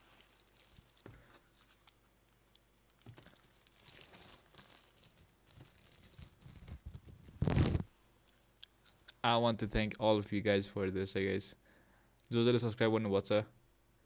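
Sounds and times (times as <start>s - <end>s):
packaging rustling and crinkling: 0.0s - 7.9s.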